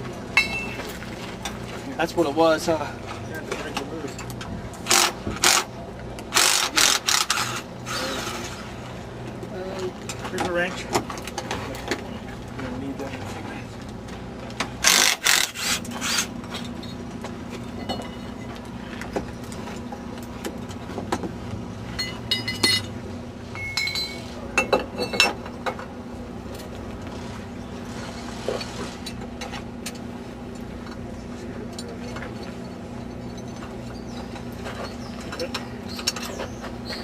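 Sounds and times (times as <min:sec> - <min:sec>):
ringing metallic clinks: 0:22.0 - 0:23.0, 0:23.6 - 0:25.4
wrench and metal parts clinking: 0:22.0 - 0:23.0, 0:23.6 - 0:25.5.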